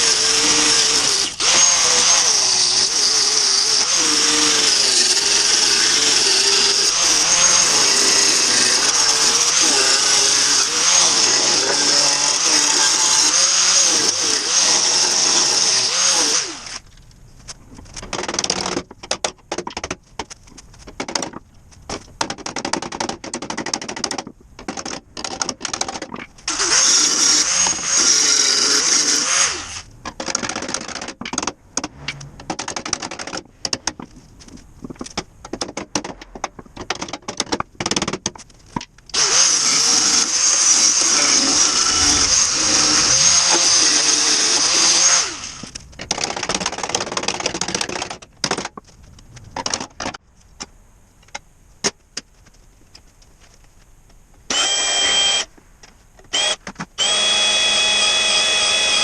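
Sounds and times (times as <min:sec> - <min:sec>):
power tool grinding metal: 0:00.0 - 0:16.8, 0:26.5 - 0:29.8, 0:39.2 - 0:45.7.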